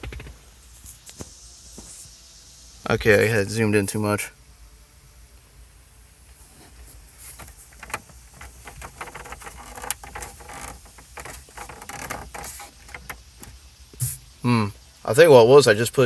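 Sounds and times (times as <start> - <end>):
clicks and rattles of plastic trim: 7.8 - 13.2.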